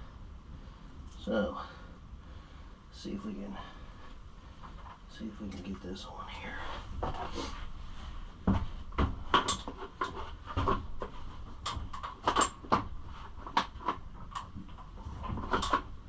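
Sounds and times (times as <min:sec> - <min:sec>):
part clicking and knocking: 0:09.3 - 0:15.9.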